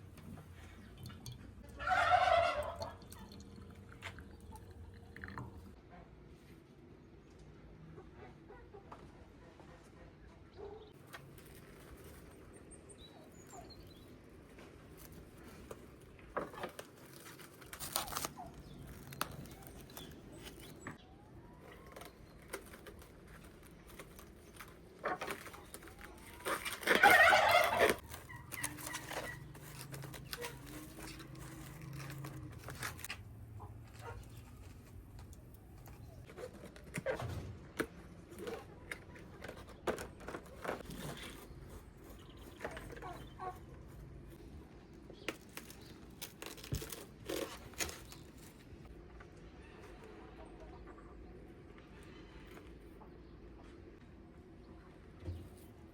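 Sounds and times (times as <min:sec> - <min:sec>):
farmyard bird calling: 0:01.7 - 0:03.4, 0:25.0 - 0:34.7, 0:40.8 - 0:44.4.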